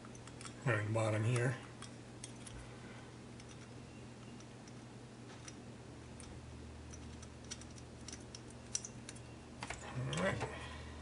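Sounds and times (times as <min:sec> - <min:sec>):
small metal parts clicking: 0:00.0 - 0:02.6, 0:03.4 - 0:10.4
steady low hum: 0:00.0 - 0:11.0.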